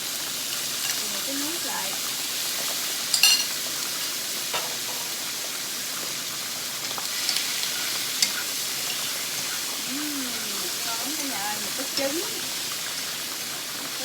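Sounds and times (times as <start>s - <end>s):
squid sizzling in hot oil: 0.0s - 14.0s
metal clinks against pan: 3.1s - 3.6s.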